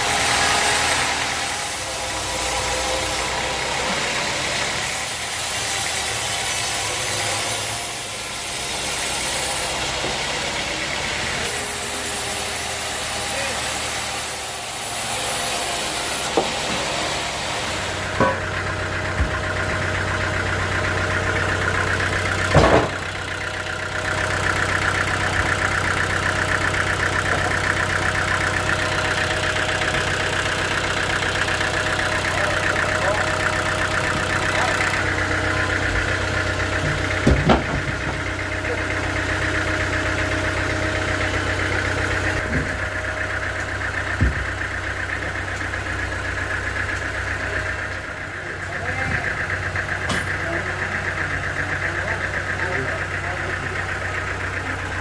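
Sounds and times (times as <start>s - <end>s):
sawmill machinery humming: 0.0s - 55.0s
loud knocks: 22.5s - 23.1s, 36.8s - 38.2s, 44.2s - 44.6s.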